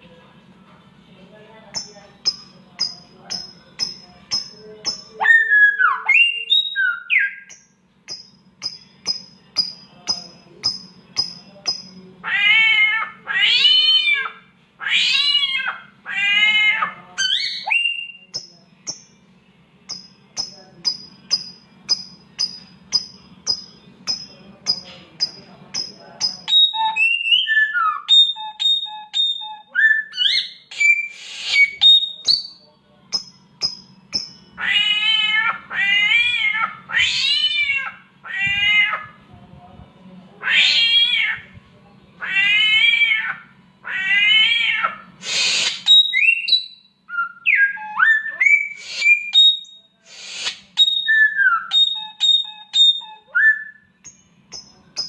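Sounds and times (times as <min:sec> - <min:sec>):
bird whistling: 0:02.3 - 0:07.6, 0:20.9 - 0:32.6, 0:45.2 - 0:53.9
bird making meow calls: 0:12.2 - 0:17.5, 0:34.6 - 0:39.2, 0:40.4 - 0:41.5, 0:42.2 - 0:45.0.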